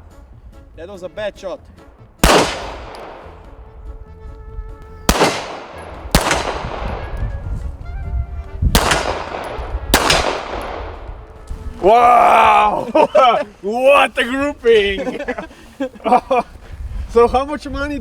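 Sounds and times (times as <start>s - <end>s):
pistol shots with echo: 2.2s - 3.5s, 5.1s - 7.3s, 8.8s - 11.2s.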